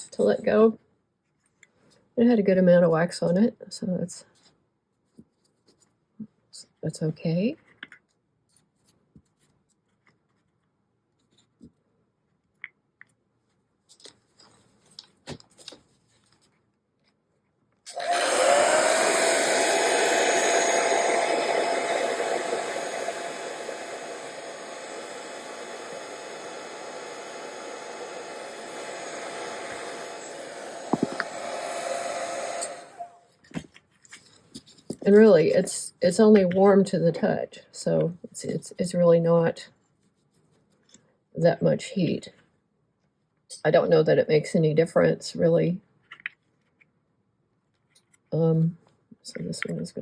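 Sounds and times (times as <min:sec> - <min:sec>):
hot-air blower whining: 0:17.9 - 0:33.2.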